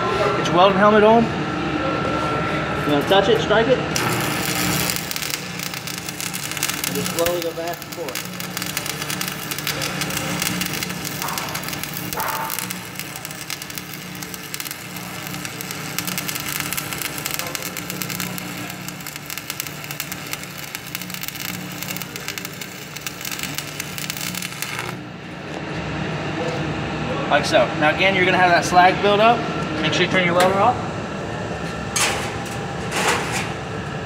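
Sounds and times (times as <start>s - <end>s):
low hum: 3.9s - 25.5s
welding arc crackling: 4.0s - 25.5s.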